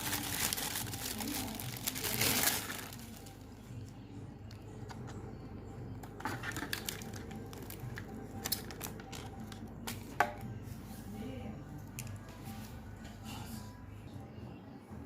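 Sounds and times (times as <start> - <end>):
packaging rustling: 0.0 - 3.5, 6.2 - 9.4.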